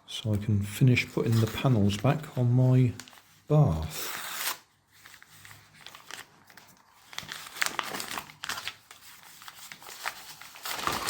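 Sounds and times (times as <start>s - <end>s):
packaging torn and crinkled: 4.1s - 11.0s.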